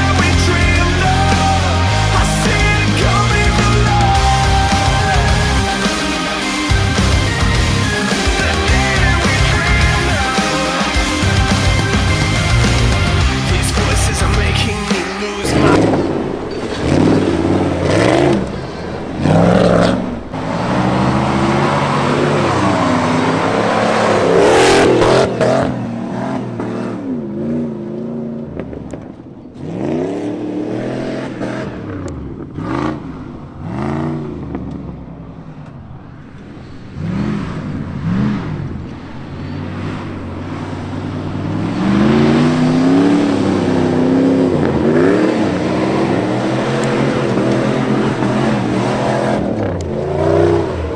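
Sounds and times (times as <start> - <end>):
car engine revving hard: 0.0 - 50.9.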